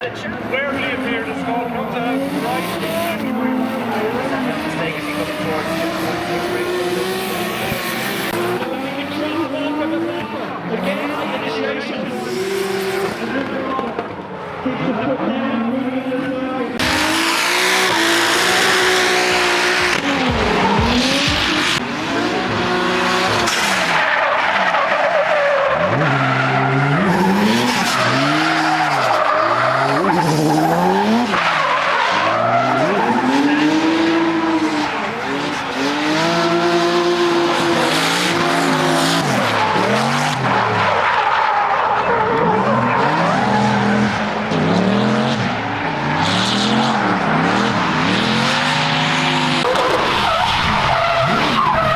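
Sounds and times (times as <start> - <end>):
car engine revving: 0.0 - 51.9
tyres squealing: 37.2 - 51.9.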